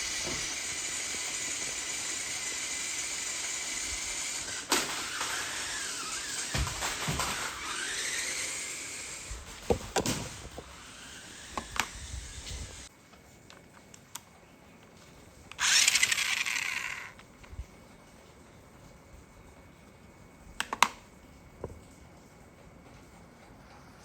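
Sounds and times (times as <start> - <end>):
toy car motor whirring: 0.0 - 9.4, 10.6 - 12.9, 15.5 - 17.2.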